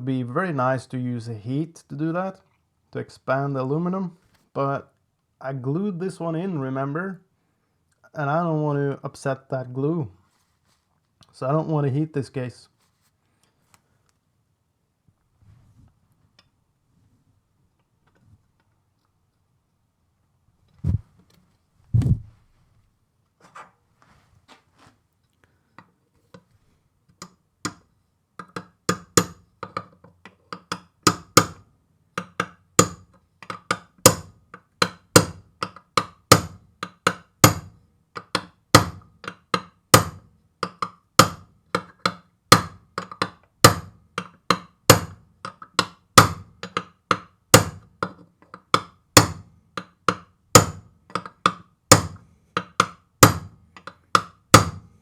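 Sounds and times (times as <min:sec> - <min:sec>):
hammer tapping on metal: 0:28.4 - 0:29.9, 0:32.2 - 0:54.8.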